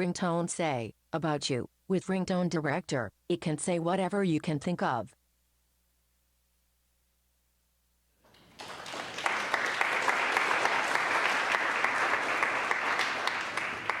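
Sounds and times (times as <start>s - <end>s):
audience applauding: 8.3s - 14.0s.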